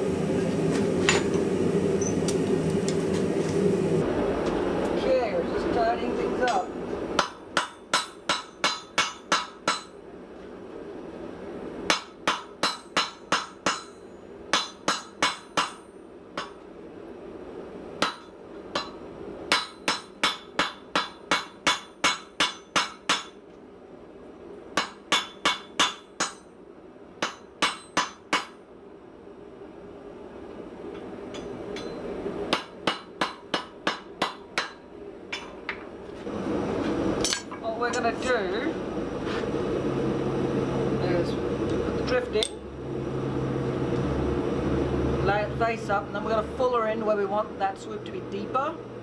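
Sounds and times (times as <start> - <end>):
low background rush: 0.0 - 49.0
hammer ringing on anvil: 31.4 - 32.1.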